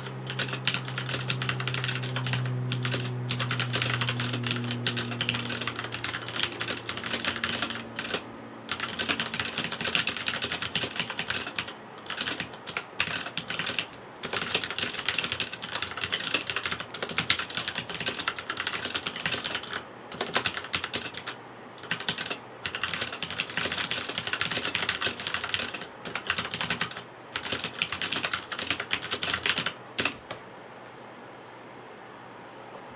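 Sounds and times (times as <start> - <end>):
mechanical keyboard typing: 0.0 - 30.3.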